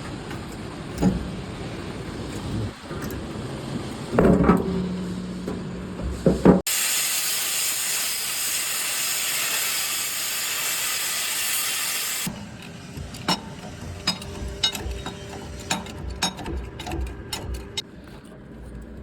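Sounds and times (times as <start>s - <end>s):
steady hum: 0.0s - 6.6s
knocks and clanks: 0.0s - 6.7s, 12.3s - 17.8s
loud even hiss: 6.6s - 12.5s.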